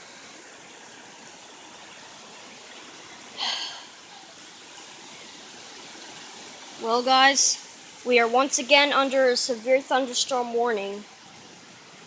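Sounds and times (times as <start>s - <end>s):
heavy rain pouring: 0.0s - 12.0s
breathy sound close by: 3.4s - 4.1s.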